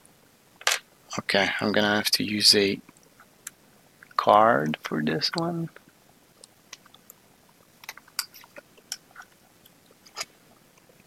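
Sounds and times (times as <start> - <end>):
faint clicks and crackles: 2.8 - 11.0.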